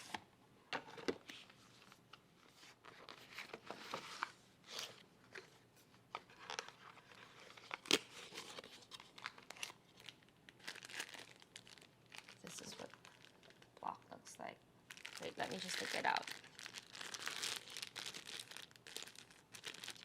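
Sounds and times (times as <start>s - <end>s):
cardboard and plastic crinkling: 6.1s - 14.0s, 14.9s - 20.0s.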